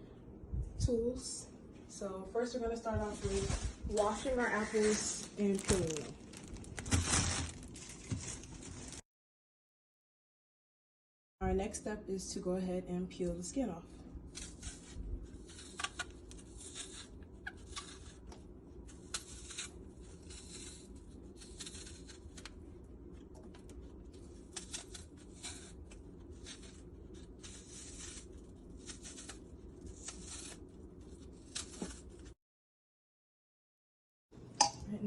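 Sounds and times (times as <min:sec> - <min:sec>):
steady low hum: 0:00.0 - 0:08.8, 0:11.4 - 0:32.4
peeler scraping apples: 0:14.3 - 0:22.6, 0:23.6 - 0:32.3.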